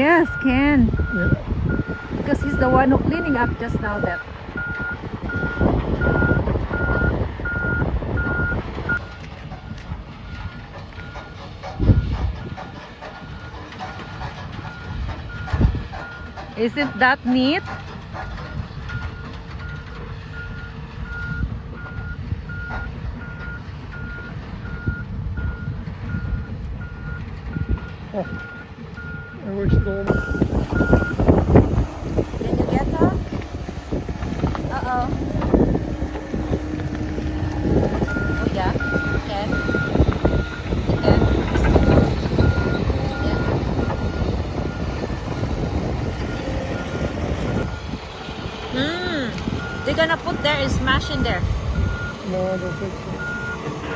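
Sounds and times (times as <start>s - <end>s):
backup alarm beeping: 0.0s - 9.2s, 13.2s - 31.8s, 32.4s - 48.0s, 48.8s - 53.9s
diesel machinery running: 0.0s - 53.9s
low rumble: 29.0s - 53.9s.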